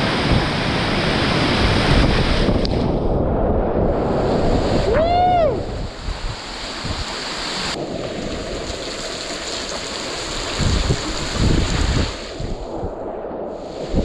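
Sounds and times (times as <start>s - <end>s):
wind buffeting microphone: 0.0s - 14.0s
low thumps of water: 7.8s - 12.3s.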